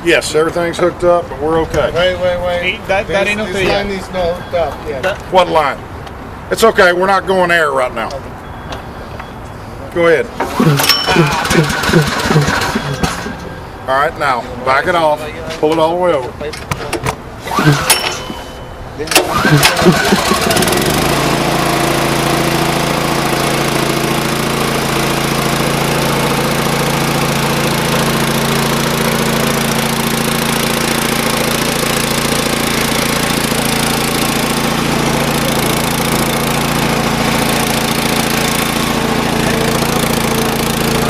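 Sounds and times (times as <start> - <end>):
air compressor engine running: 10.4 - 14.4, 17.2 - 41.0.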